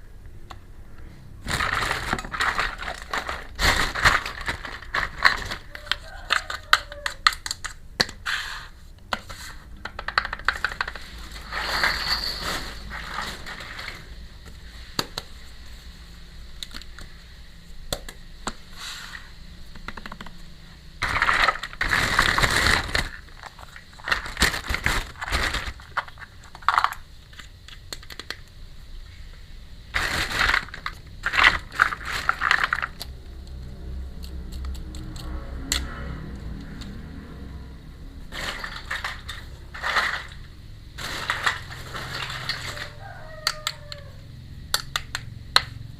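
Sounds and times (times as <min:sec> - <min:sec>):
plastic packaging crinkling: 0:01.4 - 0:07.8, 0:09.9 - 0:14.2, 0:21.0 - 0:28.4, 0:29.9 - 0:33.1, 0:38.3 - 0:43.1
plastic toy pieces clicking: 0:04.3 - 0:08.2, 0:09.8 - 0:11.0.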